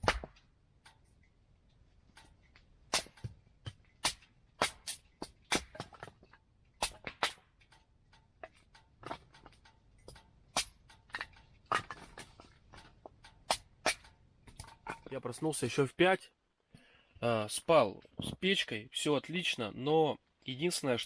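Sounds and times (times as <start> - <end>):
firewood crackling and popping: 0.0 - 15.6.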